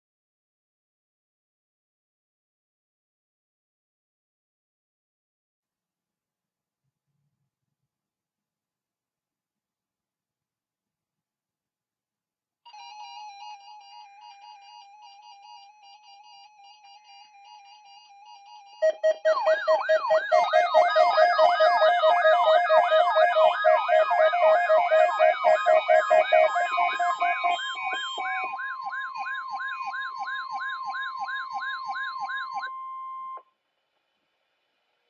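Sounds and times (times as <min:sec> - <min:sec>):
electronic siren wails: 0:13.8 - 0:33.4
pulsing low tone: 0:18.8 - 0:32.6
steady alarm tone: 0:18.8 - 0:33.4.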